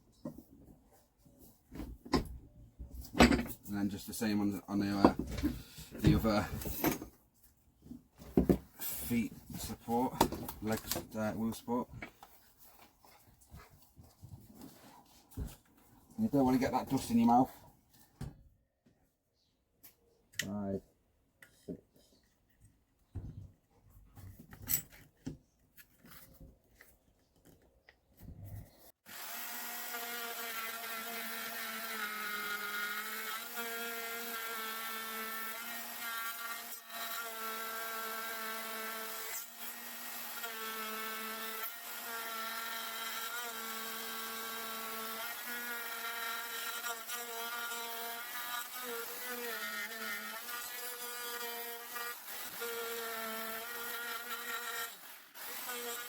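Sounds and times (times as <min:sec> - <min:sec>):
electric router cutting wood: 0:29.0 - 0:56.0.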